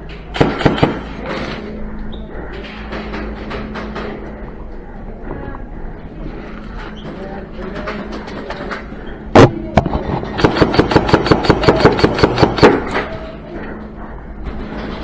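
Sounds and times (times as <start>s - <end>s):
airsoft gun shots: 0.3s - 1.5s, 9.4s - 13.0s.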